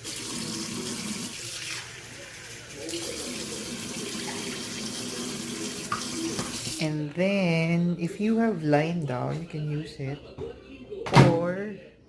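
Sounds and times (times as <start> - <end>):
tap water running into cup: 0.0 - 6.8.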